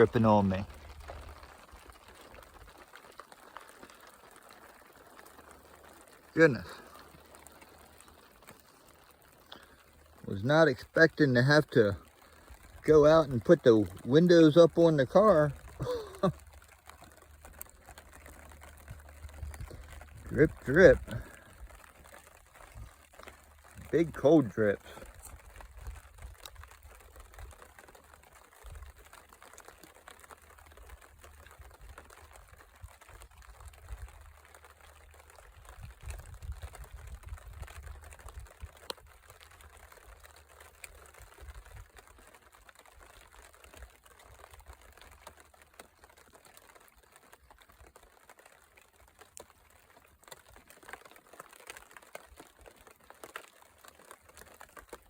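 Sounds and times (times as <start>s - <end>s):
light rain pattering: 0.0s - 55.0s
wind rumble on microphone: 35.5s - 38.8s.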